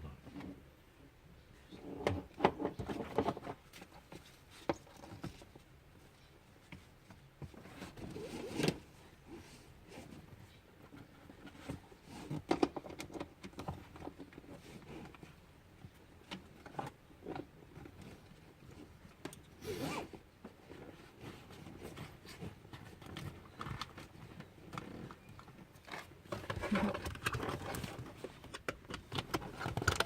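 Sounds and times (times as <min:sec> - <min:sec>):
straps and fabric rubbing: 0:19.6 - 0:20.1.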